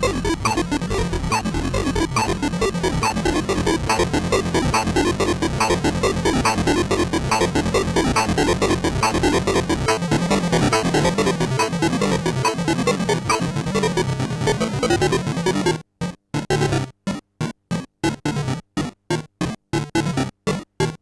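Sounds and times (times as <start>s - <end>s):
buzzy synthesizer notes: 0.0s - 13.8s.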